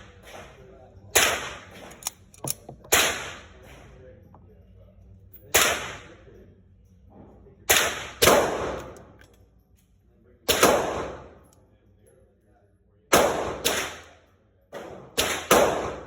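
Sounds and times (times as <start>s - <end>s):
pistol shots with echo: 0.0s - 3.8s, 5.5s - 6.2s, 7.7s - 9.2s, 10.5s - 11.5s, 13.1s - 16.0s.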